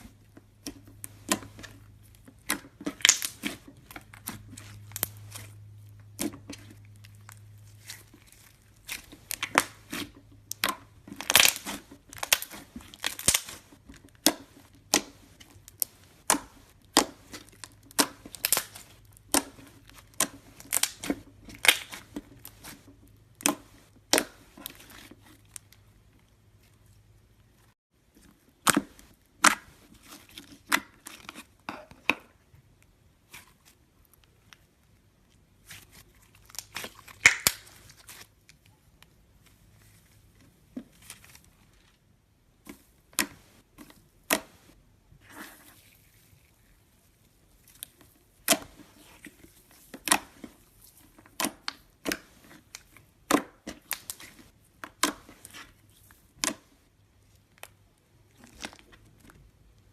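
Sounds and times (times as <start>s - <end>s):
slime clicking and popping: 2.4s - 3.6s, 9.3s - 13.6s, 14.2s - 22.1s, 36.5s - 37.8s.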